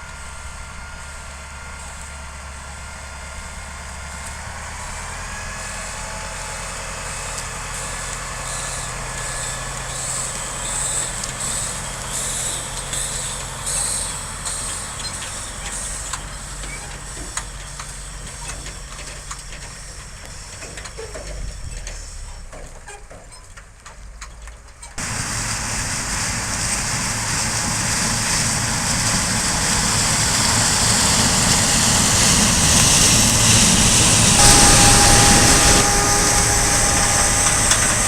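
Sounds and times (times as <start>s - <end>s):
diesel machinery running: 0.0s - 22.9s, 23.7s - 38.0s
rushing hiss: 25.0s - 38.0s.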